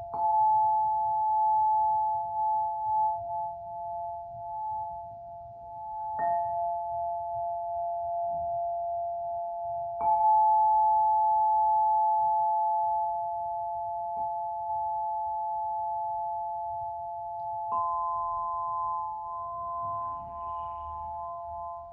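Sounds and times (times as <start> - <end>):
quartz tubes ringing: 9.9 - 21.9.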